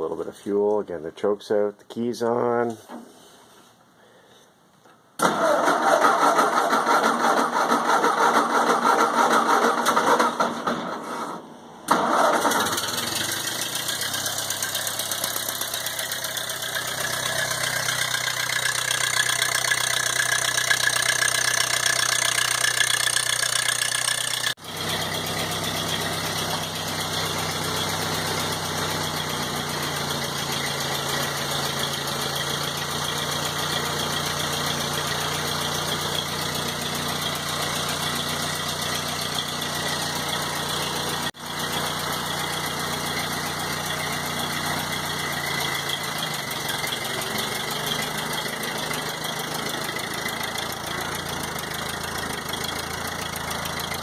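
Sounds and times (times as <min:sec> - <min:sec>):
starter motor cranking: 0:05.2 - 0:11.2, 0:11.9 - 0:38.4
tractor engine running: 0:11.9 - 0:54.0.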